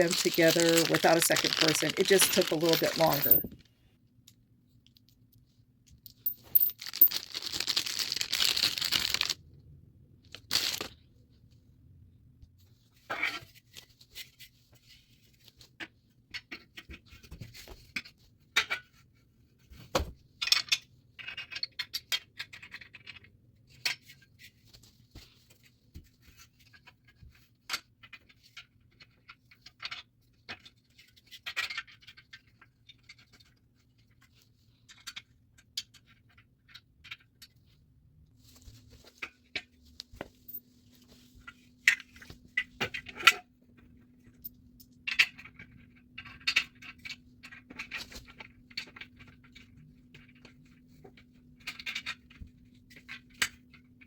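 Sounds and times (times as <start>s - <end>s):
metal parts clicking and clinking: 0.0s - 3.6s, 5.9s - 7.7s.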